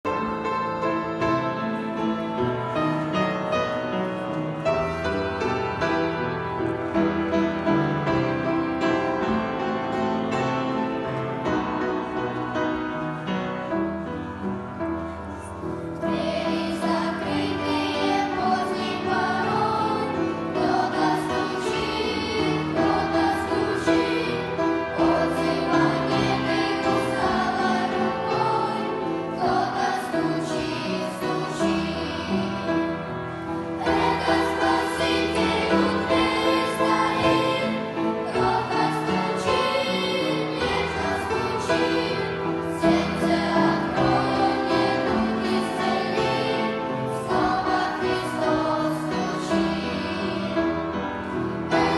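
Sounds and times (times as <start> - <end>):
instrumental accompaniment: 0.1 - 51.9
choir singing: 15.0 - 51.9.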